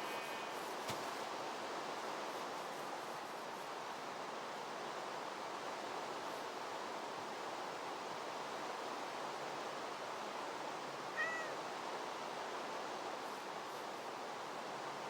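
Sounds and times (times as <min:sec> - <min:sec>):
falling rain hiss: 0:00.0 - 0:15.0
animal meowing call: 0:11.2 - 0:11.6.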